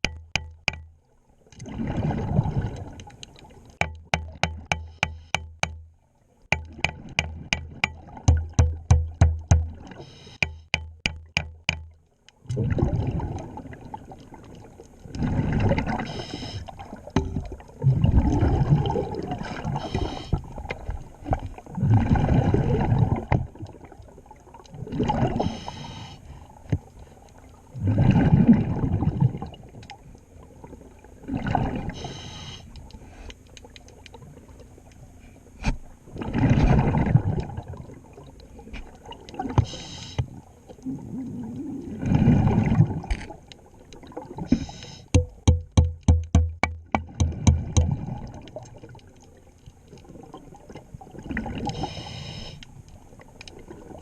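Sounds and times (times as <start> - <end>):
exhaled bubbles rushing: 1.6 - 3.0, 12.5 - 16.1, 16.8 - 19.8, 21.3 - 23.9, 27.8 - 29.7, 36.1 - 38.3, 40.8 - 43.1, 47.0 - 49.0
diver breathing through regulator: 10.0 - 10.4, 16.0 - 16.7, 19.5 - 20.4, 25.3 - 26.5, 31.9 - 33.4, 39.6 - 40.3, 44.5 - 45.1, 51.7 - 52.7.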